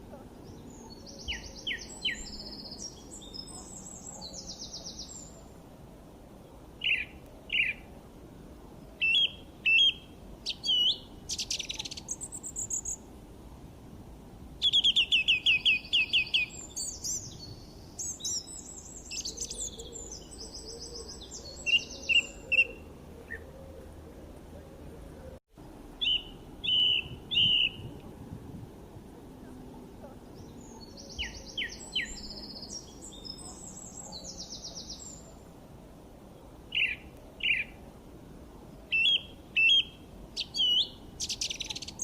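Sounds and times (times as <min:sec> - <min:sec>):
faint steady hiss: 0:00.0 - 0:42.0
birds chirping and singing: 0:00.4 - 0:05.4, 0:09.0 - 0:13.0, 0:14.6 - 0:23.5, 0:26.0 - 0:27.9, 0:30.4 - 0:35.4, 0:38.9 - 0:42.0.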